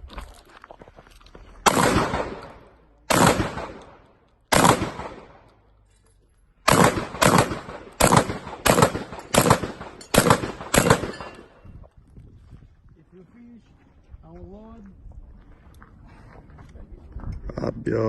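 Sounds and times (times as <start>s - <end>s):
shotgun shots echoing: 1.6s - 5.5s, 6.6s - 11.6s.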